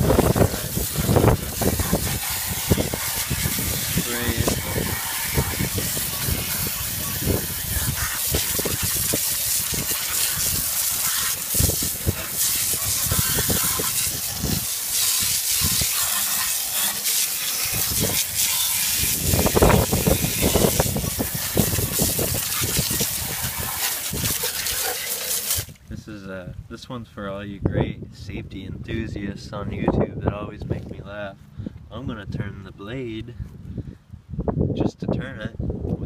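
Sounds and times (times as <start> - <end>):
water spraying onto metal: 0.0 - 25.8.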